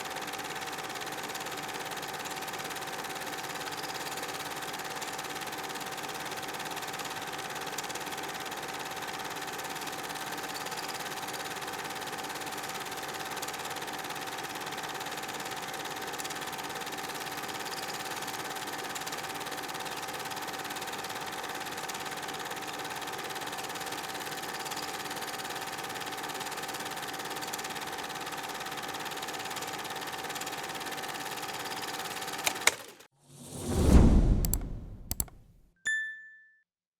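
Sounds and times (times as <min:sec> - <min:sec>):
sharp projector click: 0:32.4 - 0:32.9, 0:34.3 - 0:35.4.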